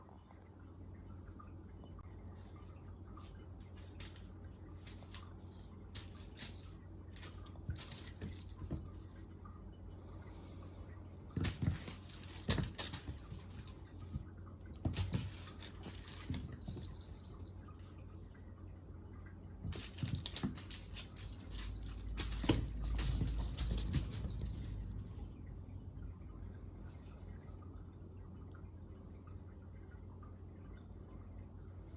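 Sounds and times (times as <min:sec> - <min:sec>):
paws pattering and scratching: 0:02.3 - 0:09.3, 0:11.3 - 0:17.8, 0:19.6 - 0:25.3.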